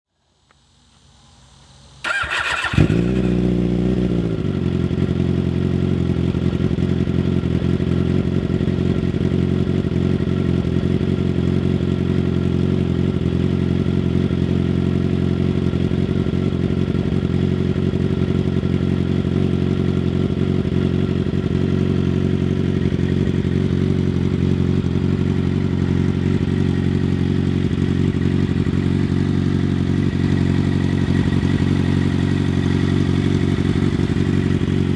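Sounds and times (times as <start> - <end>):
motorcycle starter cranking: 2.0 - 3.5
motorcycle engine idling: 2.0 - 34.9.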